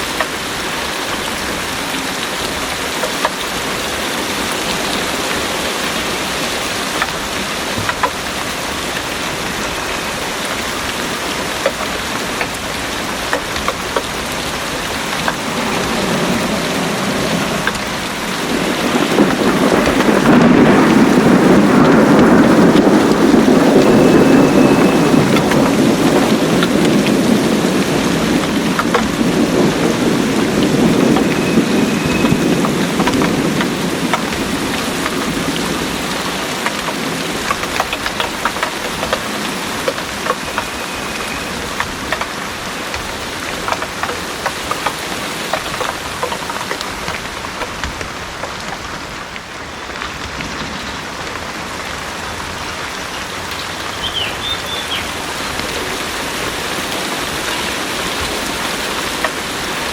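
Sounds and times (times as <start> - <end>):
heavy rain pouring: 0.0 - 59.9
rain drops pattering: 0.0 - 59.9
low rumble of thunder: 4.2 - 44.0.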